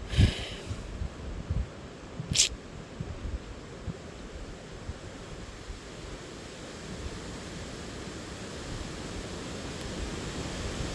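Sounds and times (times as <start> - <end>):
strong wind: 0.0 - 5.9
rush of moving water: 0.0 - 10.9.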